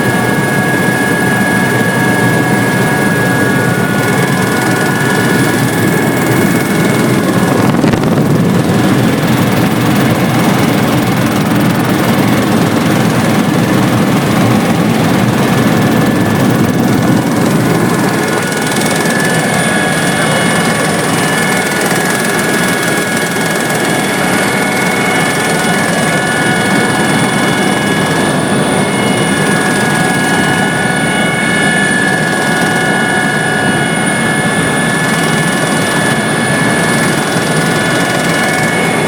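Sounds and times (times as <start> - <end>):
helicopter rotor and engine: 0.0 - 39.0.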